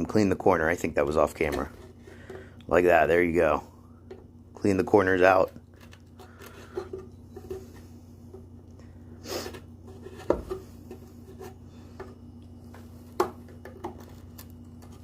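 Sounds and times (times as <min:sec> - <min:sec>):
steady low hum: 0:00.0 - 0:15.0
tool scraping: 0:09.3 - 0:12.2.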